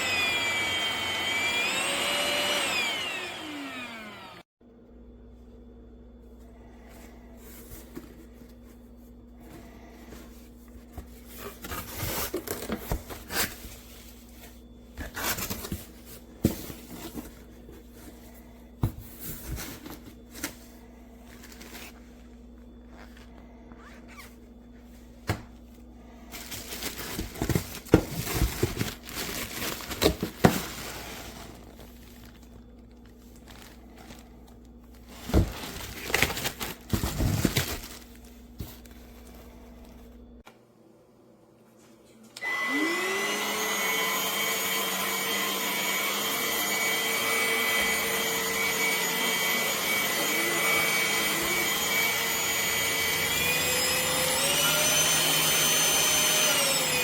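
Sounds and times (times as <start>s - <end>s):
crinkling rustles: 19.0s - 25.7s, 26.3s - 40.4s.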